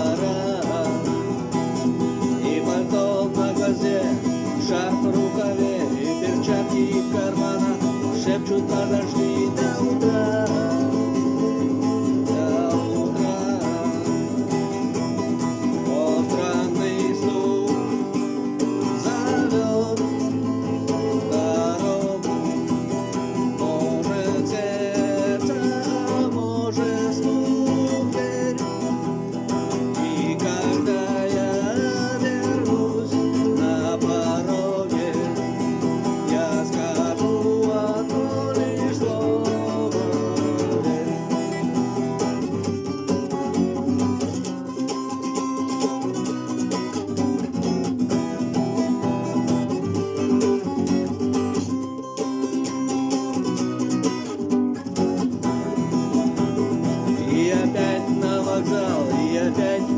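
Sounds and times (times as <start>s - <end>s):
person singing: 0.0s - 43.2s, 55.4s - 59.9s
guitar accompaniment: 0.0s - 59.9s.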